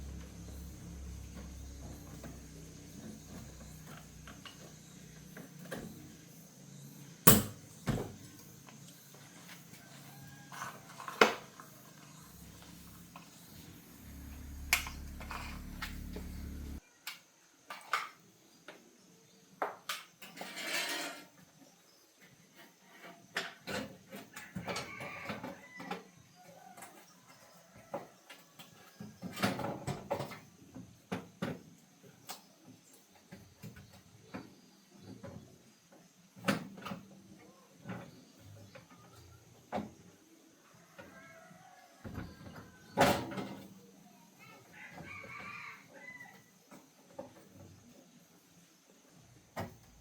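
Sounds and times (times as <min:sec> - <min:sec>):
steady low hum: 0:12.1 - 0:16.8.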